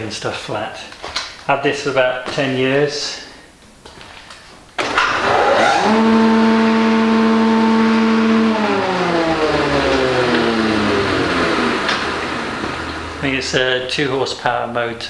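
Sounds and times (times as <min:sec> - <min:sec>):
planer motor humming: 0:04.8 - 0:13.7.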